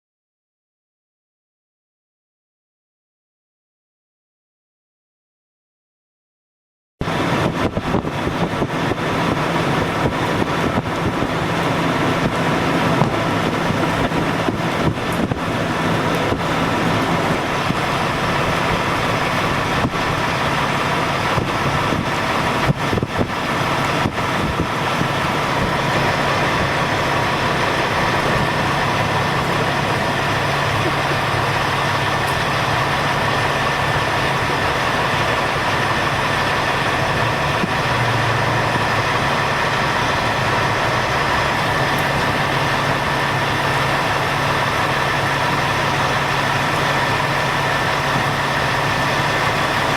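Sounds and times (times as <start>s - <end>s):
wind gusts buffeting microphone: 7.0s - 34.1s
engine idling: 7.0s - 49.9s
heavy rain: 7.0s - 49.9s.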